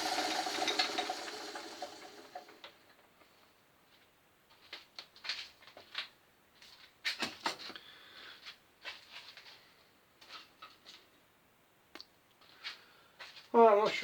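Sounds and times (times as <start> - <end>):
loud clatter: 0.0 - 2.6.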